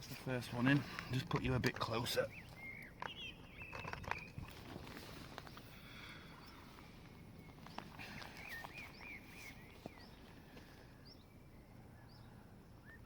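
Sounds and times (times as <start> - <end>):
outdoor background noise: 0.0 - 13.0
faint bird chirps: 2.0 - 13.0.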